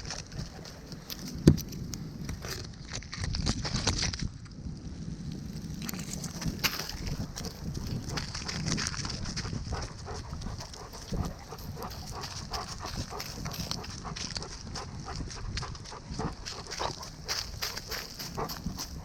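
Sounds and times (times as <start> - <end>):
crunching steps on forest floor: 5.3 - 19.0
dog panting: 7.2 - 19.0.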